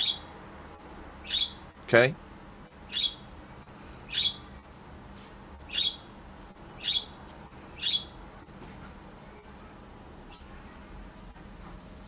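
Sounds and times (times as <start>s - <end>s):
bird chirping: 0.0s - 0.3s, 1.2s - 1.7s, 2.9s - 3.3s, 4.1s - 4.5s, 5.7s - 6.1s, 6.8s - 7.2s, 7.8s - 8.2s
faint steady hum: 0.0s - 12.0s.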